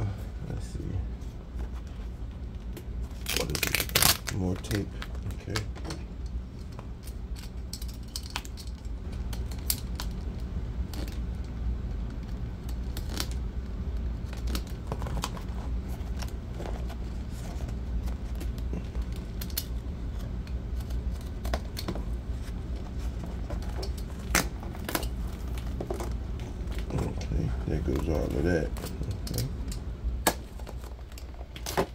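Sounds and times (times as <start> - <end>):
steady low hum: 0.0 - 31.9
tape tearing and crackling: 2.6 - 5.8, 12.1 - 13.4, 14.2 - 19.9, 20.7 - 31.9.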